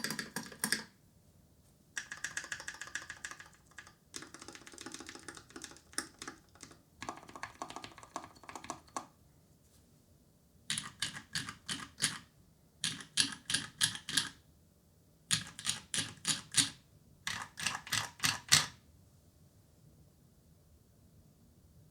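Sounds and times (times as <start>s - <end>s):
mechanical keyboard typing: 0.0s - 0.9s, 2.0s - 9.1s, 10.7s - 14.4s, 15.3s - 18.8s.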